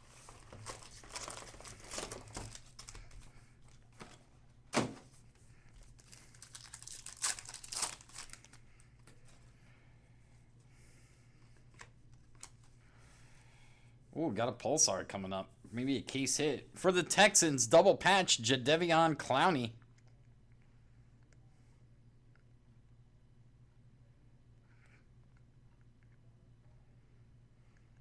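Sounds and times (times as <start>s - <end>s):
plastic packaging crinkling: 0.0s - 4.2s, 5.8s - 9.4s.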